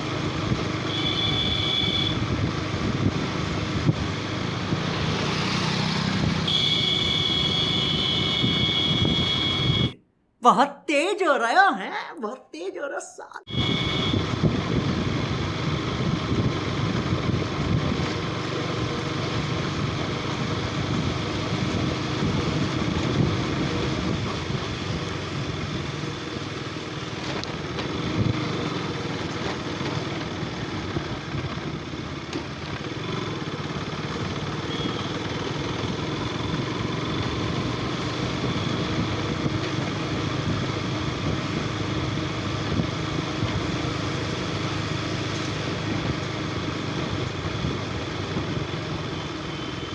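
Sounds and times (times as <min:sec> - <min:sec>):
road noise: 0:00.0 - 0:10.3, 0:13.4 - 0:49.9
motorcycle engine running: 0:13.5 - 0:49.9.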